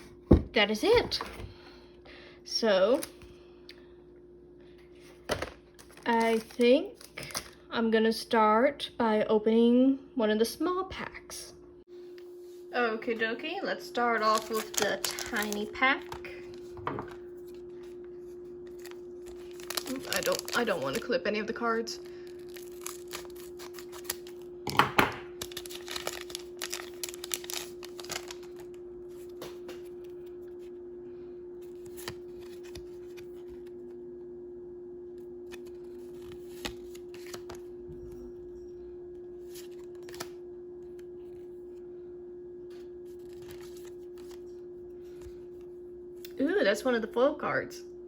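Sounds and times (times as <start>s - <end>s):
steady hum: 0.0s - 48.0s
foil pack rustling and crinkling: 5.0s - 7.6s, 14.1s - 21.2s, 22.0s - 30.3s, 35.5s - 37.7s, 43.0s - 45.5s.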